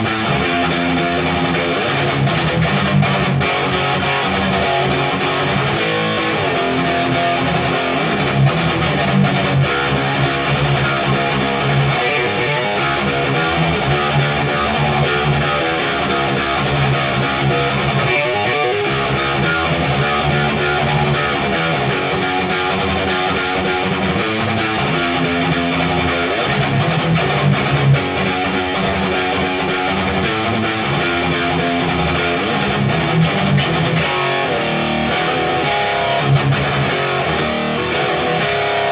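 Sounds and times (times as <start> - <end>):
distorted electric guitar riffs: 0.0 - 38.9.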